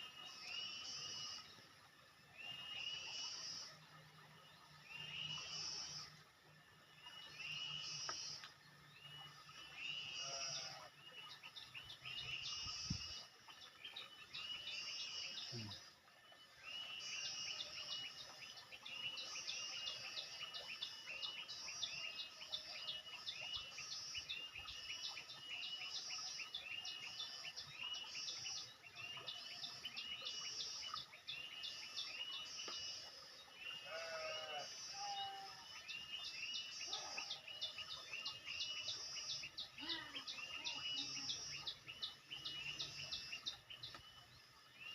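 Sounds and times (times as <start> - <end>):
birds chirping: 6.8 - 44.9
lower bird calls: 33.8 - 35.6.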